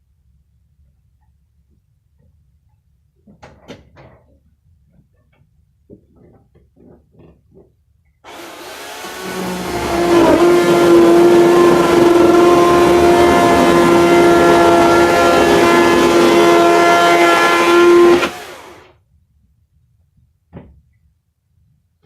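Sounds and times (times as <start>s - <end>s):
electric chainsaw whining: 8.3s - 18.9s.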